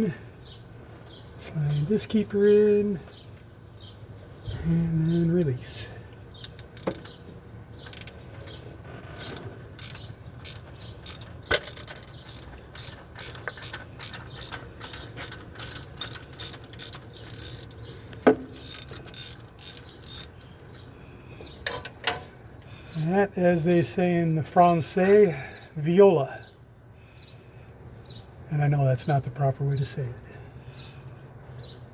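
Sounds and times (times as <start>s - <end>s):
metallic clicks: 6.4s - 7.2s, 7.8s - 8.6s, 9.2s - 20.5s
sharp metal knocks: 6.4s - 7.2s.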